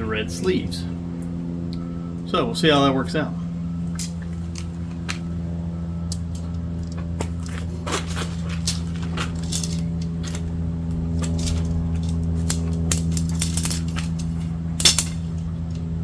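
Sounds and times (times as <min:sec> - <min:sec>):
steady low hum: 0:00.0 - 0:16.0
tent poles clicking and clinking: 0:06.1 - 0:15.9.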